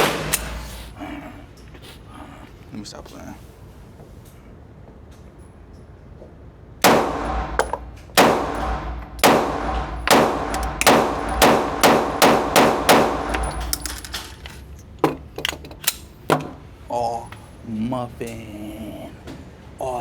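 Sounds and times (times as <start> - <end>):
pistol shots: 6.8 - 14.1.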